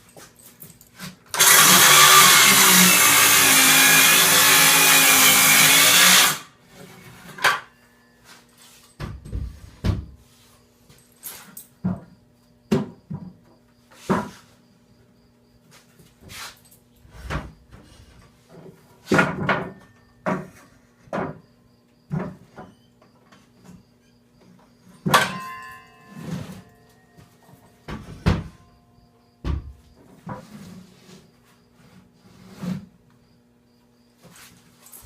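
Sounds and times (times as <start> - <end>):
wood and tools knocking: 18.5 - 21.4.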